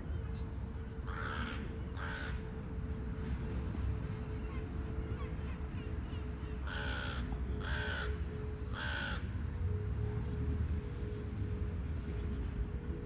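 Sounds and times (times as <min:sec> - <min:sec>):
crow cawing: 0:01.1 - 0:02.4, 0:06.6 - 0:09.2.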